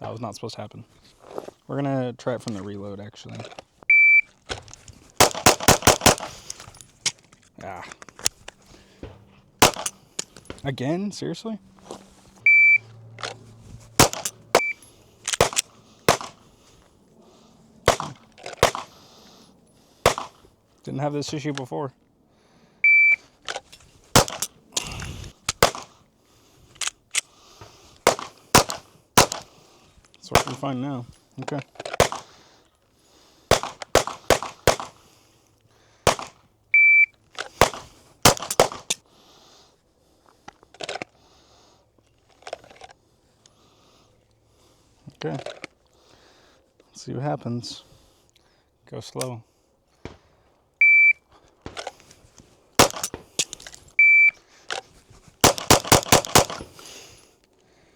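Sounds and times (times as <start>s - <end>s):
pistol shots: 5.2s - 6.5s, 9.0s - 10.5s, 13.9s - 16.5s, 17.8s - 19.0s, 20.0s - 20.5s, 24.1s - 26.0s, 28.0s - 29.6s, 30.3s - 30.8s, 32.0s - 32.4s, 33.5s - 35.0s, 36.1s - 36.4s, 37.5s - 39.0s, 52.8s - 53.5s, 55.4s - 56.8s
short high beep: 12.4s - 12.9s, 14.6s - 14.8s, 22.8s - 23.2s, 50.8s - 51.2s, 54.0s - 54.4s.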